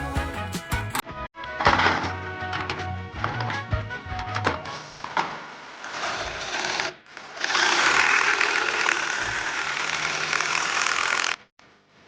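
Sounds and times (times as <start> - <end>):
small power tool buzzing: 6.5 - 11.5.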